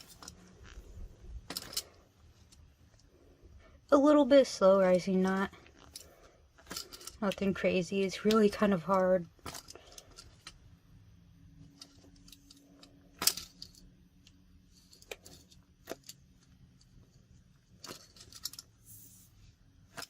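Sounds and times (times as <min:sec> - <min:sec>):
light clicks of toy handling: 0:11.6 - 0:20.0.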